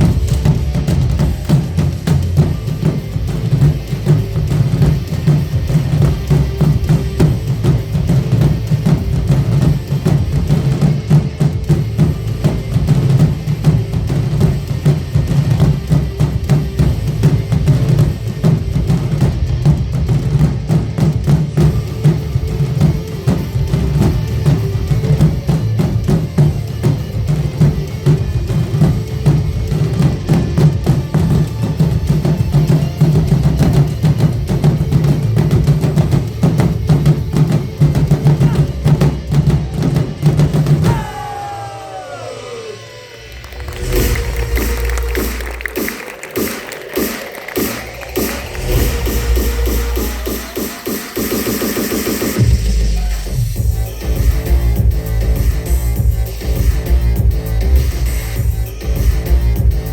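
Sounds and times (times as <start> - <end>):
music with booming drums: 0.0 - 42.6, 43.4 - 59.9.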